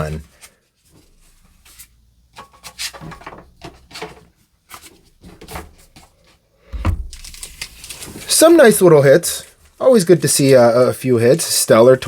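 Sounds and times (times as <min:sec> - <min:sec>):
dull thump: 0:06.7 - 0:07.3
card packaging rustling: 0:07.0 - 0:08.7.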